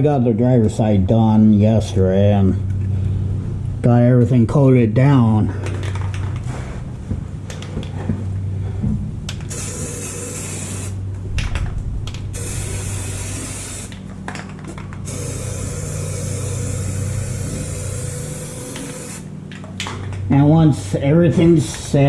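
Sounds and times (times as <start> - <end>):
low hum: 0.0 - 22.0
aerosol can spraying: 9.5 - 11.0, 12.4 - 14.0, 15.0 - 19.3.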